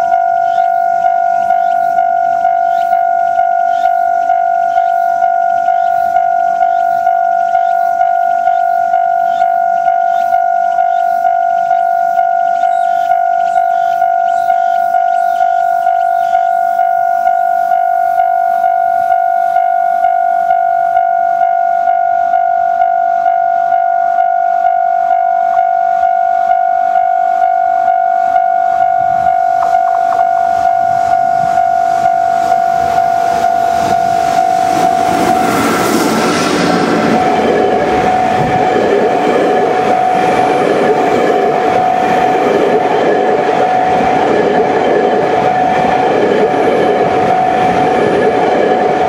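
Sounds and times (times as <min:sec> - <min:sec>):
level-crossing warning bell: 0:00.0 - 0:49.0.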